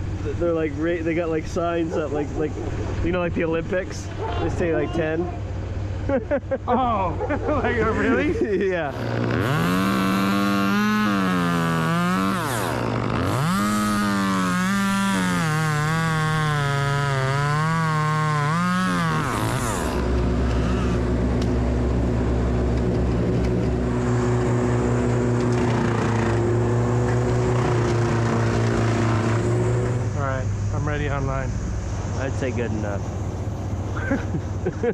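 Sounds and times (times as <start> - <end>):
low engine hum: 0.0 - 34.9
chainsaw running: 7.3 - 31.2.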